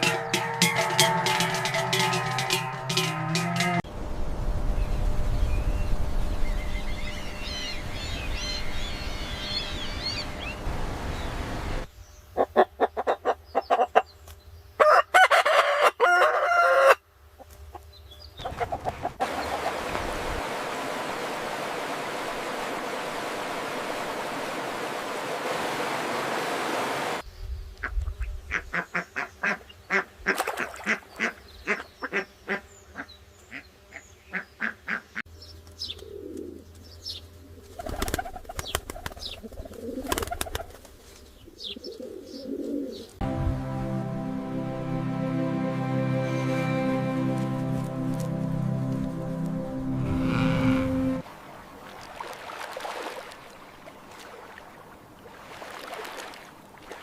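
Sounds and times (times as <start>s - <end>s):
high chirping birdsong: 4.8s - 12.4s
poultry calling: 30.8s - 35.2s, 49.8s - 51.2s.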